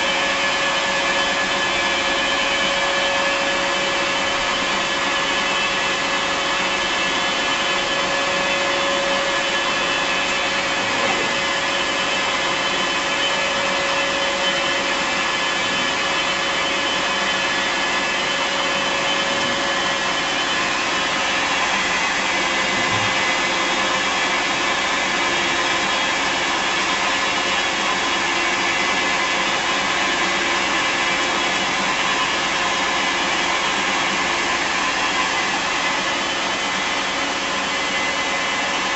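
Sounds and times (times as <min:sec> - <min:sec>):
lathe machine whine and hum: 0:00.0 - 0:38.9.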